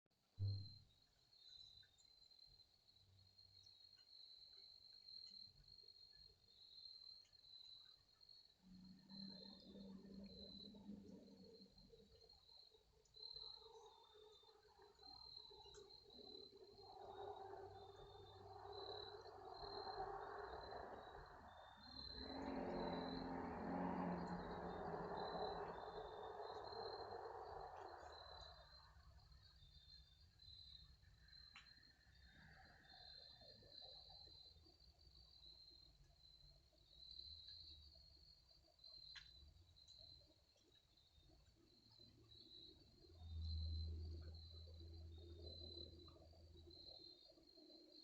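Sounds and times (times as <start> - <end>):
crickets trilling: 0.8 - 48.0
low hum: 16.9 - 28.7.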